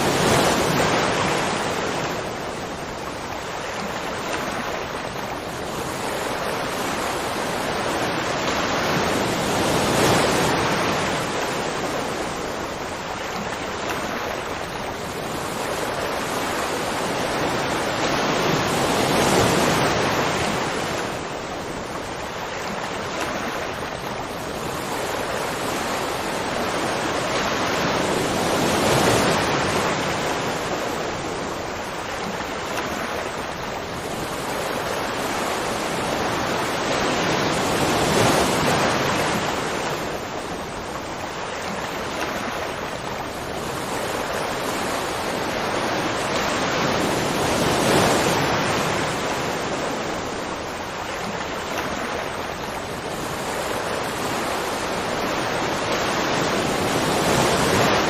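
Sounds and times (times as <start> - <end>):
waterfall rushing: 0.0 - 5.6.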